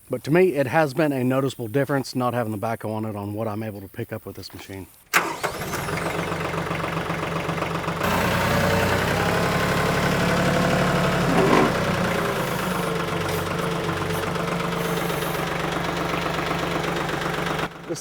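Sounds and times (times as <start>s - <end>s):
tractor diesel engine running: 5.2s - 18.0s
engine knock: 6.1s - 17.9s.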